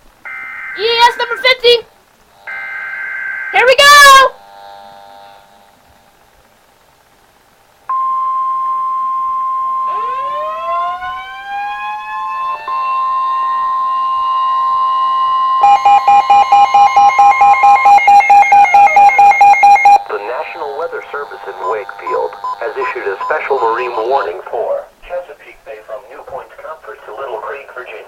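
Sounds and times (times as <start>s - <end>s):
rapidly pulsing alarm: 2.4s - 4.1s, 9.8s - 20.0s
steady high alert tone: 7.9s - 11.0s, 11.8s - 20.0s
siren winding up: 9.2s - 20.0s.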